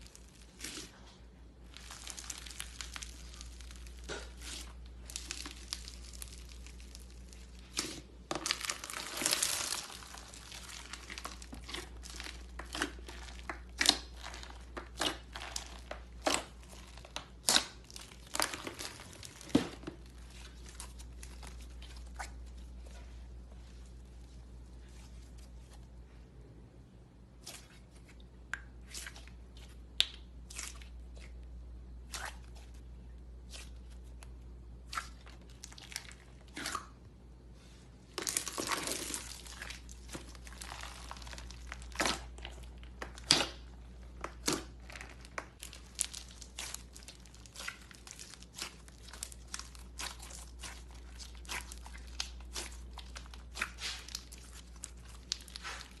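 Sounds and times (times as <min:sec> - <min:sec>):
slime crackling and popping: 0:01.6 - 0:22.4, 0:38.1 - 0:56.0.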